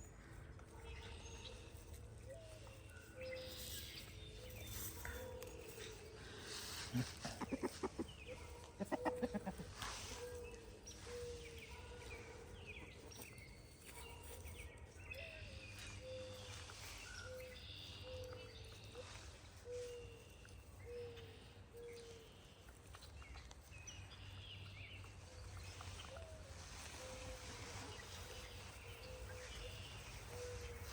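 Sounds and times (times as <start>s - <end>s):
wild birds chirping: 0.0s - 30.9s
chickens clucking: 6.8s - 10.2s.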